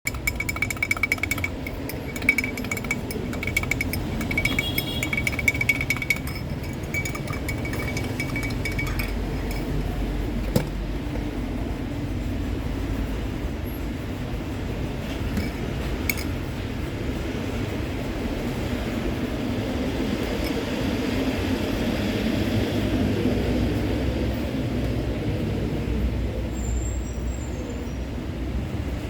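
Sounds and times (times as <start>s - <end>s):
utensil clinking against cup: 0.1s - 10.8s, 15.1s - 16.4s, 20.1s - 20.8s.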